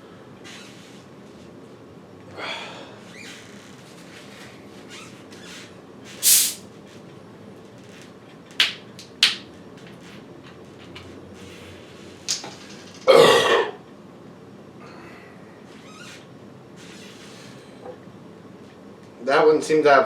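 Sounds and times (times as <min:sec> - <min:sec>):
short hissing sounds: 0:06.2 - 0:06.6
man burping loudly: 0:13.1 - 0:13.8.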